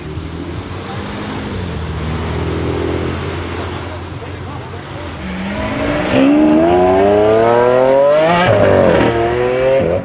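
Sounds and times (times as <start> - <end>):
car engine accelerating hard: 5.2 - 10.0.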